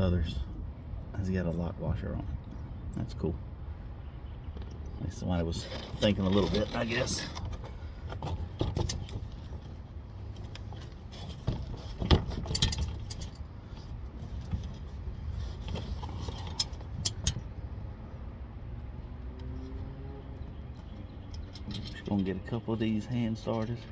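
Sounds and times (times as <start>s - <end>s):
metal bolts clinking: 12.0s - 13.5s, 16.0s - 17.5s, 21.0s - 23.9s.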